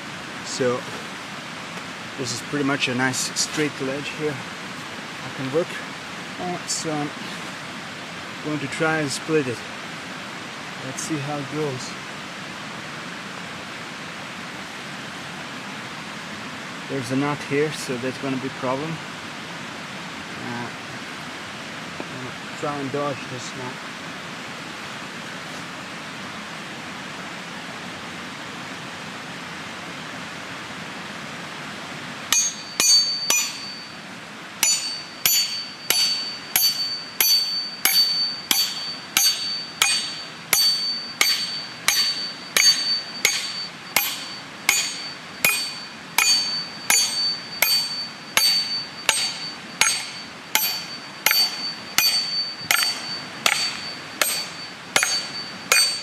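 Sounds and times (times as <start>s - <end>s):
steady rushing noise: 30.6s - 56.0s
hammer striking steel wedge: 32.3s - 33.9s, 34.6s - 56.0s.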